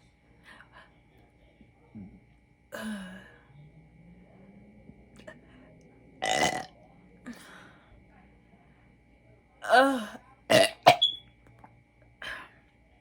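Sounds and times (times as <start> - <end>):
woman burping: 2.8 - 3.2, 6.2 - 6.7, 9.6 - 11.1.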